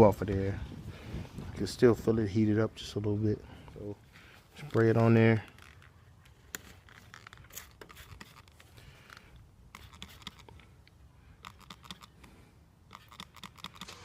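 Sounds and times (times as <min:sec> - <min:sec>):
scratchy rubbing noises: 0:09.8 - 0:10.5.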